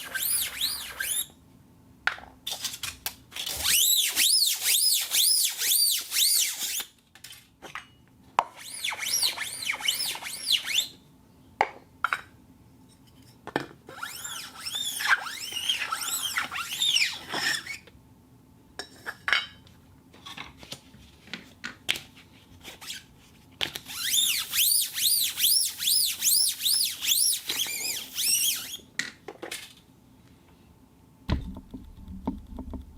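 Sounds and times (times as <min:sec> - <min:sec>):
plastic cup squeaking on turntable: 0:00.0 - 0:01.3, 0:03.4 - 0:06.8, 0:08.6 - 0:10.9, 0:13.9 - 0:17.9, 0:23.9 - 0:28.9.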